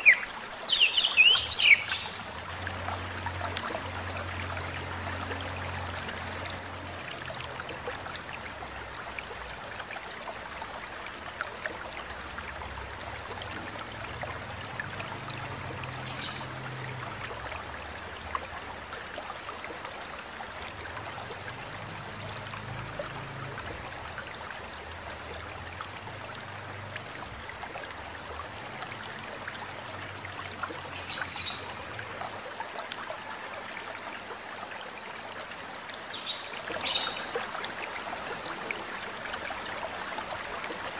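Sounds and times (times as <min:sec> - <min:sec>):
high bird chirps: 0:00.0 - 0:02.2
flowing stream: 0:00.0 - 0:40.9.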